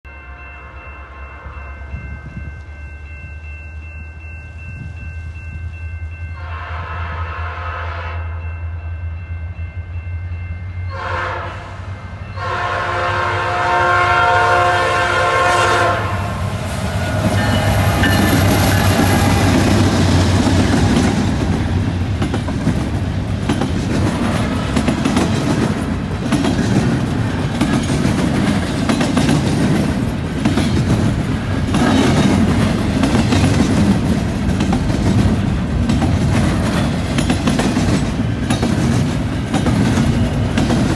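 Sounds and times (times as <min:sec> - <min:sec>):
train horn blasts: 0:06.4 - 0:08.6, 0:10.8 - 0:21.4
train wheels clattering on rails: 0:13.9 - 0:40.9
locomotive engines running: 0:14.6 - 0:40.9.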